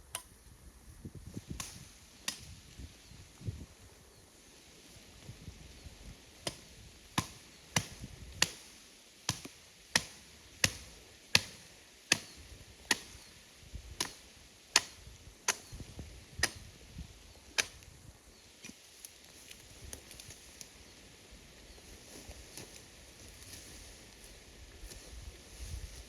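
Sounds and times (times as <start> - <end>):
wood being chopped: 7.2 - 8.6, 9.3 - 13.2, 14.0 - 14.2, 14.8 - 15.7, 16.4 - 16.7, 17.6 - 17.8.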